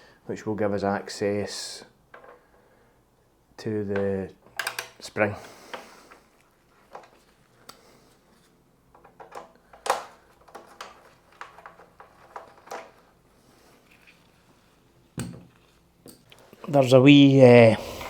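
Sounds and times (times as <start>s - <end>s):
metal parts and tools clicking: 4.6s - 5.0s.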